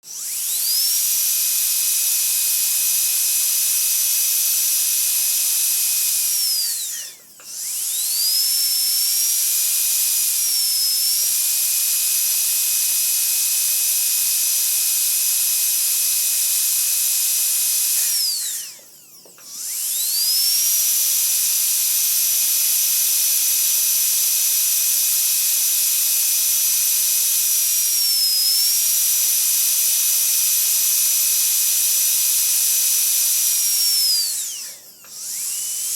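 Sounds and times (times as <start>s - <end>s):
dentist's drill whining: 0.0s - 35.9s.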